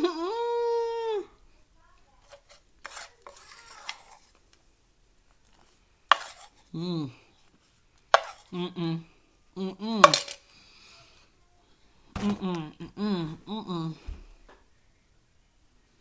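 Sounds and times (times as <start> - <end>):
person humming mm: 0.0 - 1.4, 6.7 - 7.3, 8.5 - 10.1, 12.2 - 14.2.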